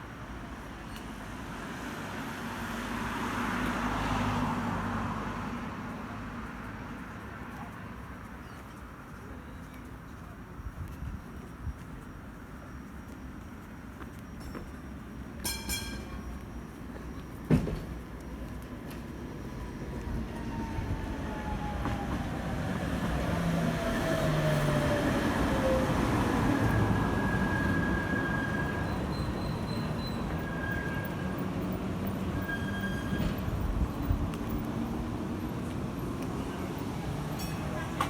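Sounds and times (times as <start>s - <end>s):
tram wheels rumbling on rails: 4.6s - 38.0s
wheel squeals: 24.5s - 34.0s.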